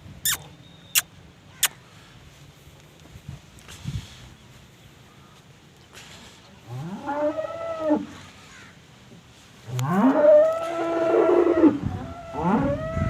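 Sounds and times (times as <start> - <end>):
cows mooing: 9.7 - 13.0.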